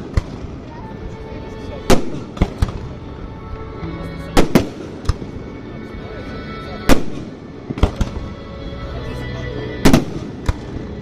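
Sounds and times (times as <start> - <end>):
fireworks bursting: 0.0 - 3.3, 4.3 - 5.6, 6.9 - 8.4, 9.8 - 11.0.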